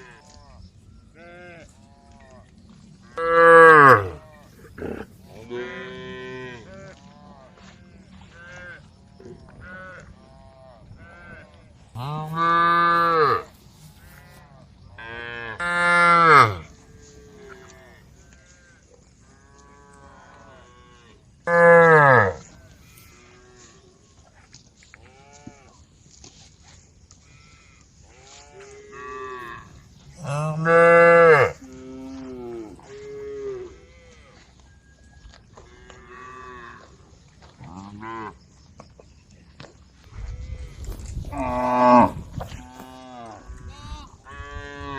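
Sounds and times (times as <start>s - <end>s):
faint cattle mooing: 3.0s - 8.8s, 9.6s - 23.8s, 27.2s - 34.4s
loud long cow moos: 3.0s - 8.9s, 9.6s - 23.8s, 27.2s - 34.5s, 40.2s - 44.9s.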